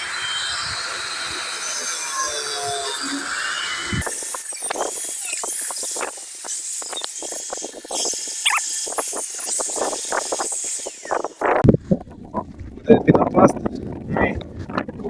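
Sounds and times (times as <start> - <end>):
foam squeak: 0.0 - 11.6.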